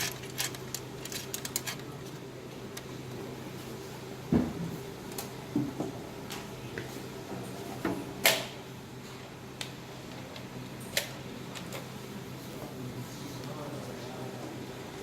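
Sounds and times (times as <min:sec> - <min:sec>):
objects clicking and knocking: 0:00.0 - 0:02.2.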